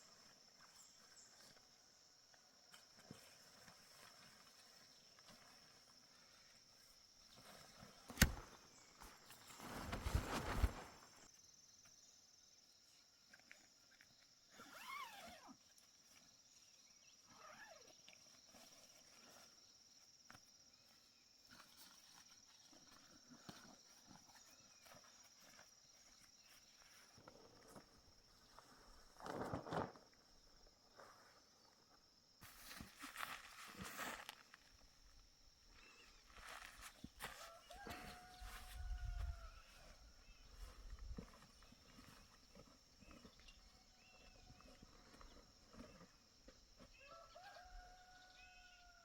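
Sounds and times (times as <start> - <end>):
rustling: 7.4 - 11.3.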